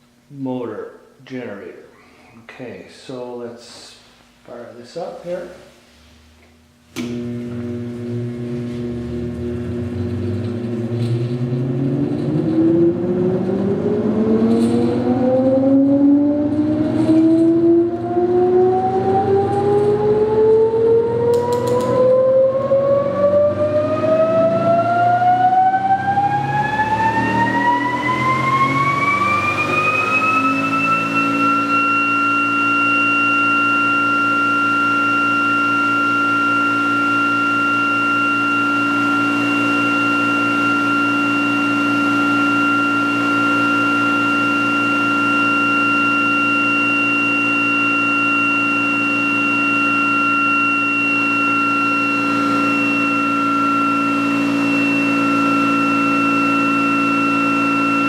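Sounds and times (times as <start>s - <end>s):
low hum: 4.0s - 58.0s
rising electric whine: 4.5s - 58.0s
brief click: 21.3s - 22.0s.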